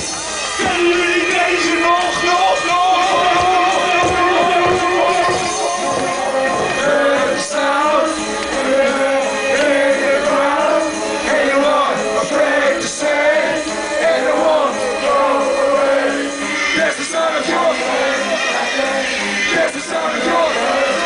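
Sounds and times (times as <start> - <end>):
hardcore music over sound system: 0.0 - 21.0.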